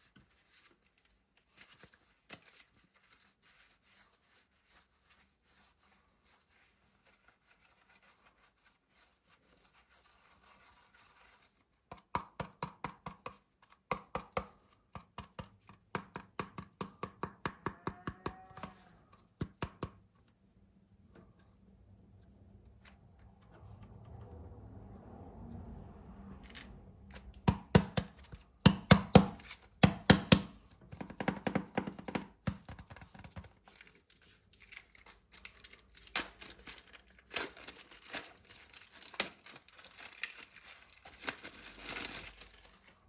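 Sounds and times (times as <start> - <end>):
clay rubbing and crinkling: 0.0 - 23.9, 26.6 - 43.0
sharp quick chopping taps: 27.5 - 33.0.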